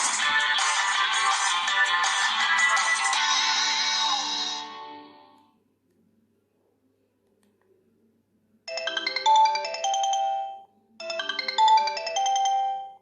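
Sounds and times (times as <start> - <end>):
mobile phone ringtone melody: 8.7 - 13.0.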